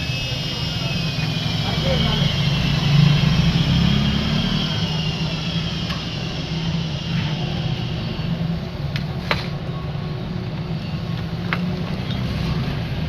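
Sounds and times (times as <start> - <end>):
high whine falling in pitch: 0.0 - 8.8
steady mechanical hum: 0.0 - 13.0.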